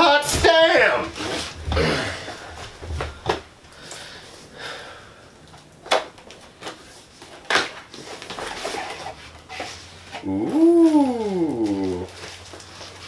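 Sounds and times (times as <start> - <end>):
cardboard packaging rustling: 5.5 - 13.0.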